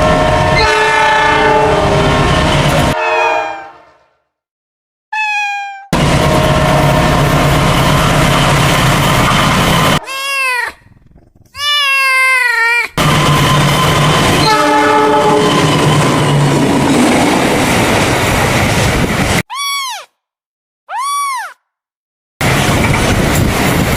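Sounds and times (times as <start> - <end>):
train engine hum: 0.0 - 4.0, 6.0 - 10.0, 13.0 - 19.4, 22.4 - 23.9
train horn blast: 0.0 - 4.2, 13.5 - 17.1
train rail noise: 0.0 - 4.2, 6.0 - 10.0, 13.0 - 19.4, 22.4 - 23.9
cat meowing: 5.2 - 5.9, 10.0 - 10.8, 11.4 - 13.0, 19.5 - 20.1, 20.9 - 21.6.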